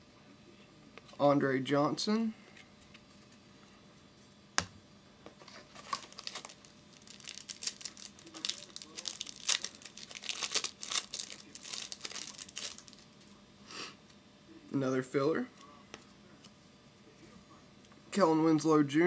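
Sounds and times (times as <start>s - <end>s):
wrapper tearing and crinkling: 5.7s - 13.1s.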